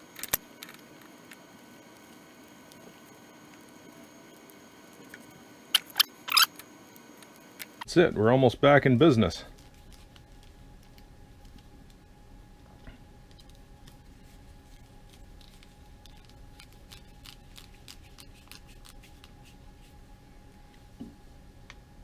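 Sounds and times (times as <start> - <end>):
faint steady hum: 0.0 - 7.9
small tools clicking: 0.0 - 7.9.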